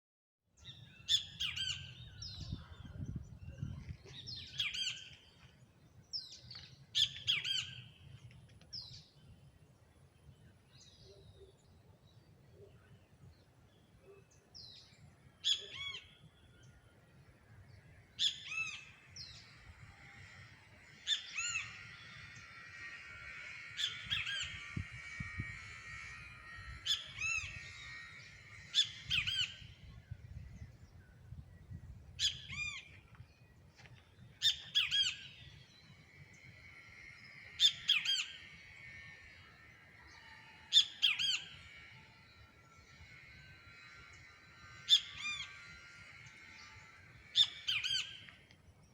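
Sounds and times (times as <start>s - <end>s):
tropical birds calling loudly: 17.7s - 30.1s, 34.4s - 48.4s.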